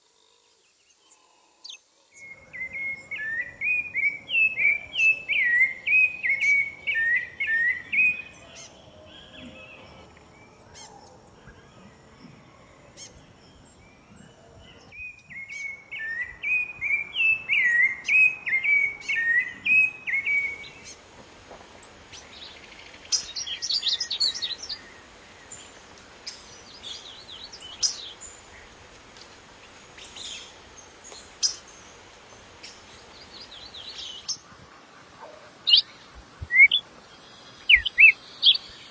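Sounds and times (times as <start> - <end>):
birds chirping: 2.2 - 21.0, 33.3 - 38.9
bird falling whistled notes: 36.4 - 36.8.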